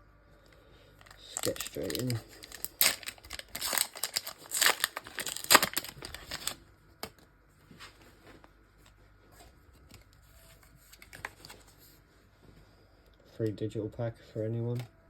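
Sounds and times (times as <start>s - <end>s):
foil pack tearing and crinkling: 1.0s - 6.6s
cards rustling and clicking: 1.0s - 7.2s, 9.8s - 11.8s.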